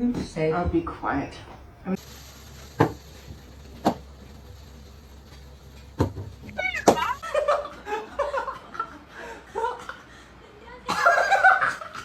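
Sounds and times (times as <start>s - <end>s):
cat meowing: 6.5s - 7.2s.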